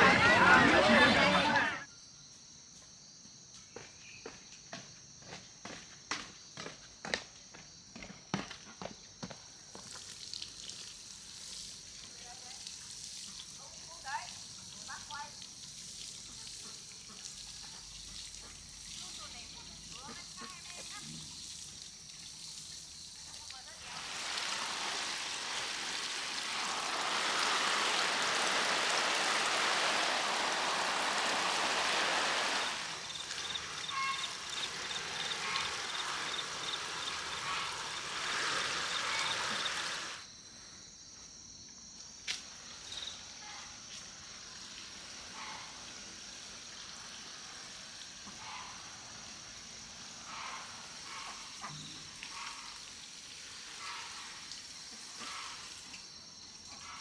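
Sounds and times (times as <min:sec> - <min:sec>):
water running: 0:00.0 - 0:01.8, 0:09.7 - 0:40.2.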